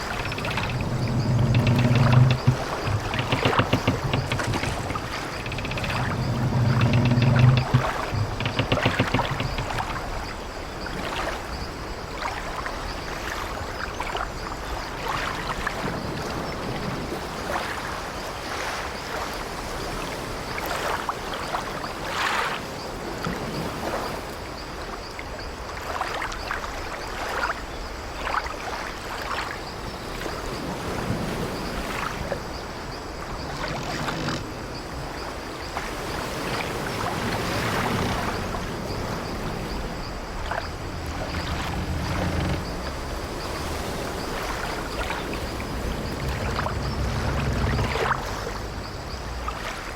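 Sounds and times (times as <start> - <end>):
wooden ship timbers creaking: 0.0 - 10.4, 33.2 - 35.1, 36.3 - 49.4
sea waves washing against ship: 0.0 - 49.9
wind: 0.0 - 49.9.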